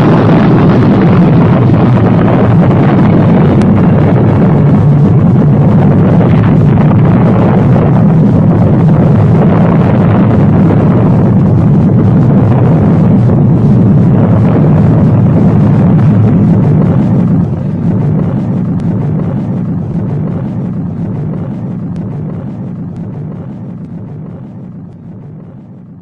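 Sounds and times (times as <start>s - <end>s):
explosion deep rumble: 0.0s - 26.0s
faint crackles: 0.0s - 26.0s.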